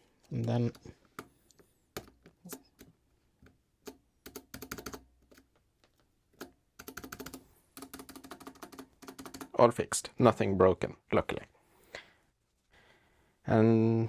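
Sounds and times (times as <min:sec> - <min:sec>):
mechanical keyboard keystrokes: 0:03.8 - 0:05.4, 0:06.4 - 0:09.5.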